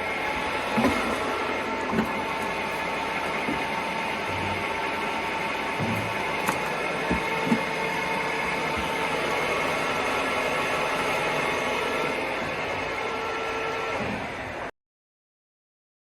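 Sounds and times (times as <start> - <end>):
lathe humming and whining: 0.0 - 14.7.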